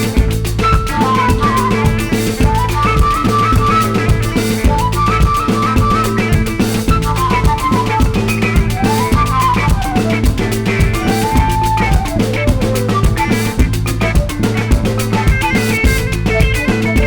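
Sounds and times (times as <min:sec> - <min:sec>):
background music with drums and bass: 0:00.0 - 0:17.0.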